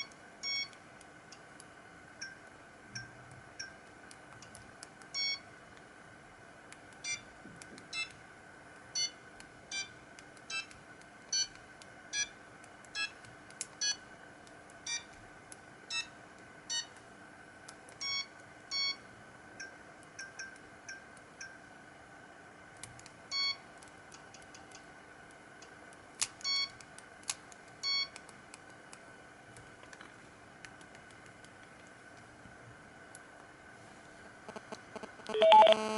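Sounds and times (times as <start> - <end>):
faint steady hum: 0.0 - 35.9
monophonic phone ringtone: 35.3 - 35.8.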